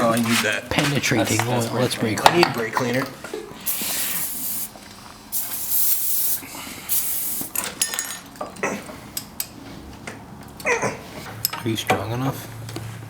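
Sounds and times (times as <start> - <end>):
aerosol can spraying: 3.7 - 7.6.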